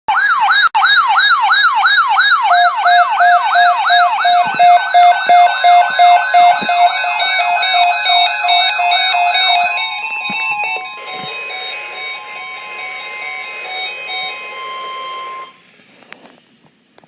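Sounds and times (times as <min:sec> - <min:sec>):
electronic siren wailing: 0:00.1 - 0:15.6
stepped electronic melody: 0:02.5 - 0:15.5
pulsing beep: 0:02.6 - 0:15.6.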